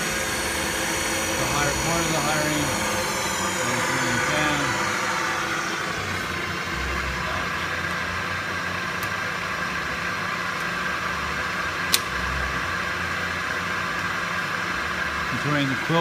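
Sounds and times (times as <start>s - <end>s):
milling machine running: 0.0s - 11.6s.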